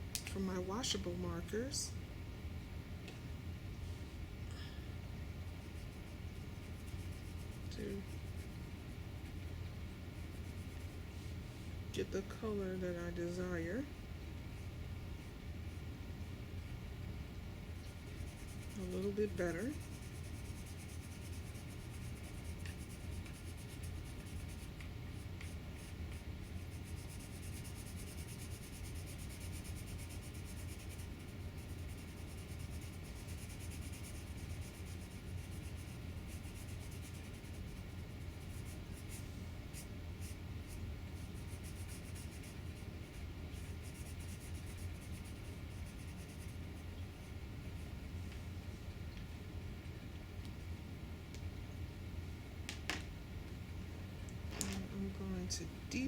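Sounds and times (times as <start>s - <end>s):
low background hum: 0.0s - 56.0s
marker scratching on paper: 5.6s - 9.4s, 17.8s - 47.2s.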